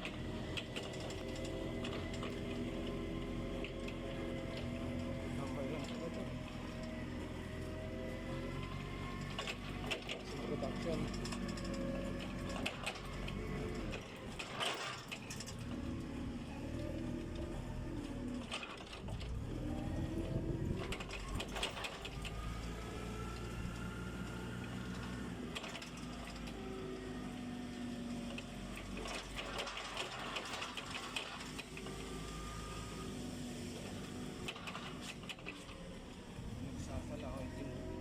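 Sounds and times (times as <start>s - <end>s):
clicking and rattling: 9.2s - 15.7s, 20.8s - 22.4s, 24.9s - 26.6s, 28.3s - 31.9s, 34.4s - 35.8s.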